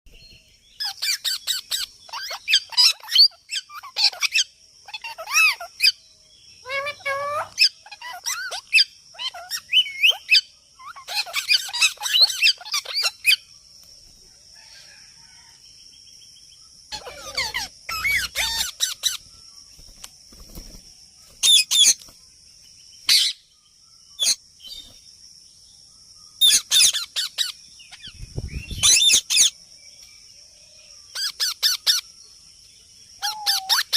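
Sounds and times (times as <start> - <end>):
parrot chirping and squawking: 0.8 - 6.0, 6.6 - 13.4, 16.9 - 19.2, 21.4 - 22.0, 23.1 - 23.4, 26.4 - 28.1, 28.8 - 29.6, 31.1 - 32.0, 33.2 - 33.9.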